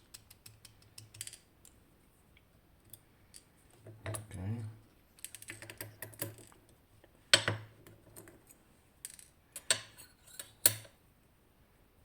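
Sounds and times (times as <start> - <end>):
metallic clicks of lock parts: 0.0 - 1.8, 9.0 - 11.0.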